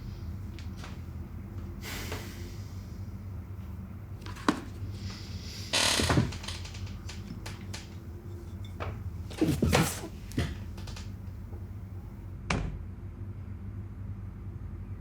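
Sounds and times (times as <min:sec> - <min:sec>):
rustling noise: 0:04.3 - 0:11.1.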